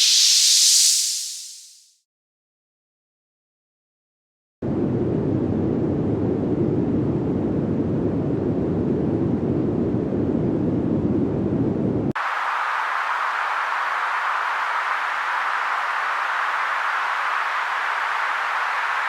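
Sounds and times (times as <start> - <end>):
bright high hiss: 0.0 - 1.9.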